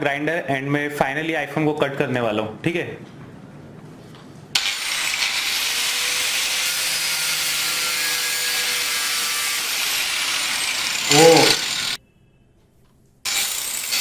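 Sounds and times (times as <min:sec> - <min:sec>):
angle grinder cutting: 0:04.6 - 0:12.0, 0:13.3 - 0:14.0.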